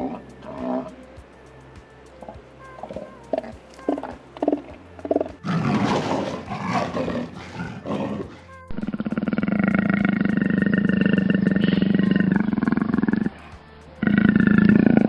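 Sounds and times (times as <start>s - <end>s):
pulsing low animal growl: 0.0s - 1.0s, 2.1s - 15.0s
rough animal vocalisation: 0.0s - 15.0s.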